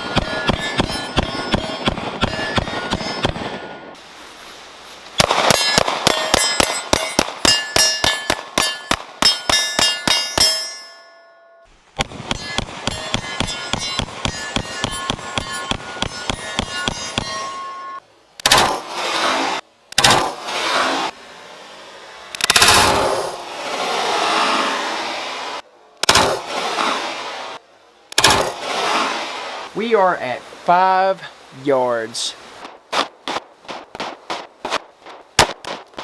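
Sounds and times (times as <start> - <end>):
steel targets ringing: 0.0 - 3.9, 5.2 - 18.8
rapid pistol fire: 5.2 - 9.3, 18.4 - 19.2, 20.0 - 20.6, 26.0 - 26.8, 28.2 - 28.8, 32.9 - 36.0.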